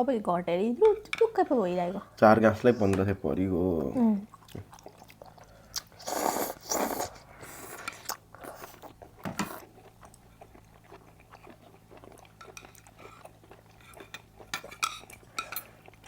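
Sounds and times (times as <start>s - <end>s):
chewing and biting food: 4.3s - 16.0s.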